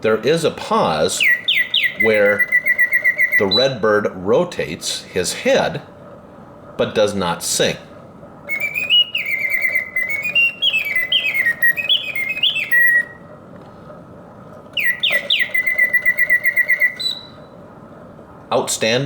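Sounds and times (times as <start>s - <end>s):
mechanical bird whistle trilling: 1.0s - 3.8s, 8.5s - 13.3s, 14.8s - 17.5s.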